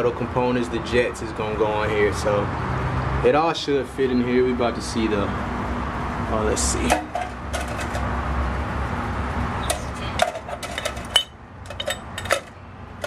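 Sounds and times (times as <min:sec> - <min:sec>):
small metal parts clinking: 0:09.7 - 0:12.6.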